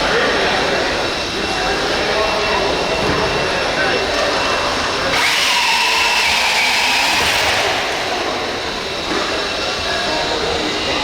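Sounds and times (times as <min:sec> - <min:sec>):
toy truck motors whining: 0:04.0 - 0:11.0.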